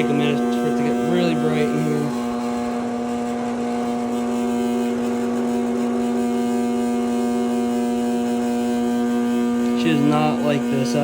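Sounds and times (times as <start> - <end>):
lamp electrical hum: 0.0 - 11.0.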